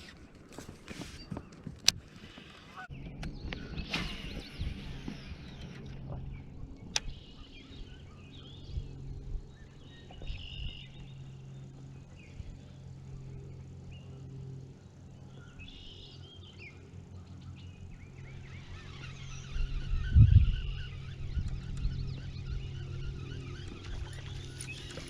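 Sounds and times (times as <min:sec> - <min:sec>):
birds chirping: 0:00.0 - 0:25.0
steady low hum: 0:00.0 - 0:25.0.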